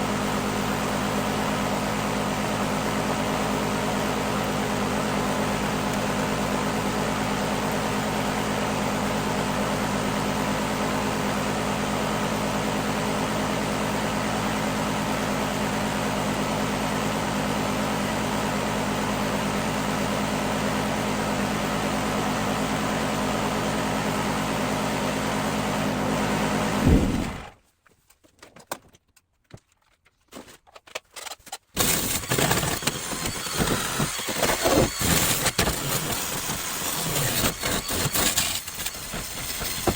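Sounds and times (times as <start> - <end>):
knocks and handling noises: 27.6 - 31.7
power tool cutting sheet steel: 31.8 - 39.9.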